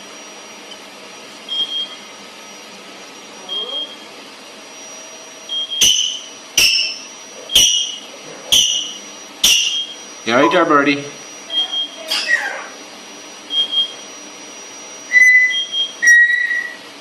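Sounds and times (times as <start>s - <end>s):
steady background hum: 0.0s - 17.0s
short high-pitched beeps: 5.5s - 10.8s, 11.5s - 12.2s.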